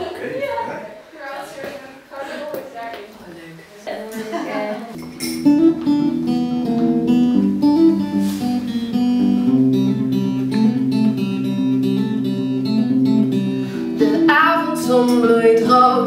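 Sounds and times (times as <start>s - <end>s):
acoustic guitar playing: 4.9s - 16.0s.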